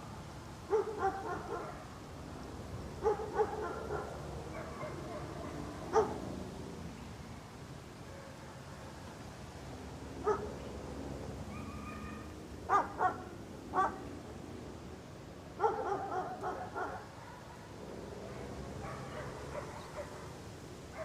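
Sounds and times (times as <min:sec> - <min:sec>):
steady background hiss: 0:00.0 - 0:21.0
dog barking: 0:00.7 - 0:01.9, 0:03.0 - 0:06.2, 0:10.2 - 0:10.5, 0:11.6 - 0:14.0, 0:15.6 - 0:17.7, 0:18.3 - 0:20.3.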